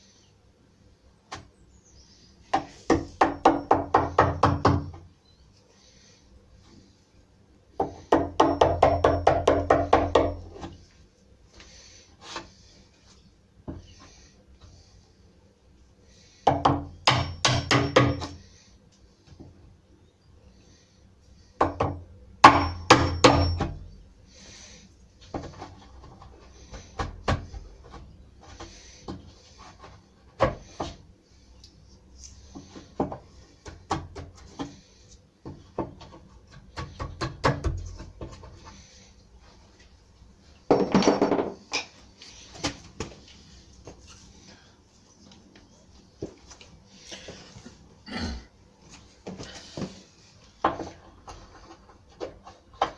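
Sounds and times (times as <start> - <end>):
hammering on wood: 2.5 - 5.1, 7.8 - 10.7, 16.4 - 18.4, 21.6 - 23.8, 35.4 - 38.2.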